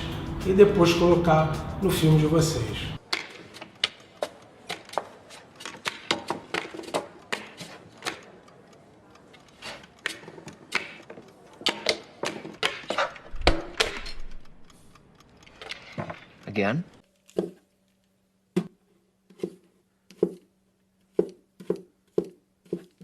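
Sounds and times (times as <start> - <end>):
sharp clicks and knocks: 3.0 - 17.5.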